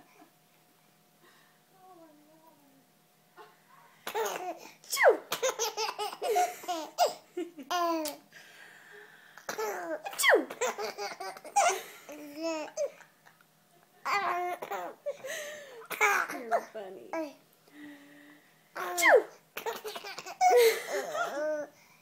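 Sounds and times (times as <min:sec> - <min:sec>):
baby giggling: 0:05.3 - 0:08.2, 0:10.6 - 0:13.0.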